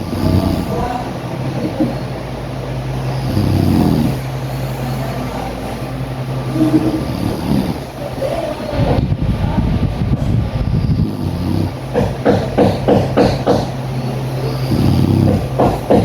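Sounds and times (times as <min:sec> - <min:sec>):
woman snoring: 0:00.0 - 0:08.1, 0:10.7 - 0:16.0
steady low drone: 0:00.0 - 0:16.0.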